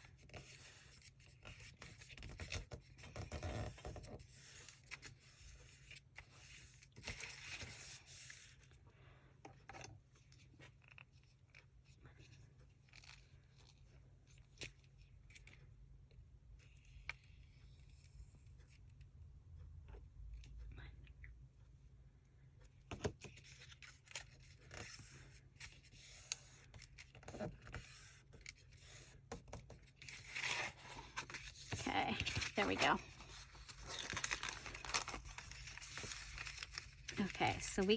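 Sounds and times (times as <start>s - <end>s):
paper rustling and creasing: 0.0s - 8.7s, 22.9s - 37.9s.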